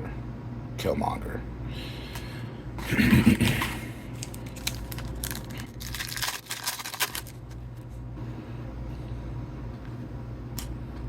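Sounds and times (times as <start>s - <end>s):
plastic wrapping crinkling: 4.2s - 7.6s.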